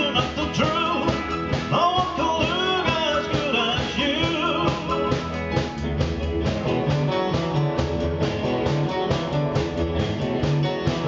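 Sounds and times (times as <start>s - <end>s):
bass guitar: 0.0s - 11.0s
steady drum beat: 0.0s - 11.0s
electric guitar riff: 2.5s - 11.0s.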